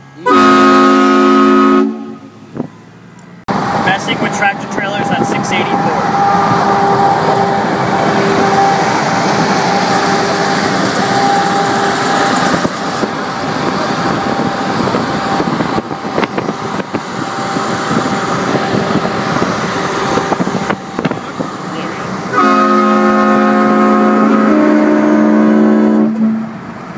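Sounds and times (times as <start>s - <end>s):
road and wind noise: 0.0s - 26.9s.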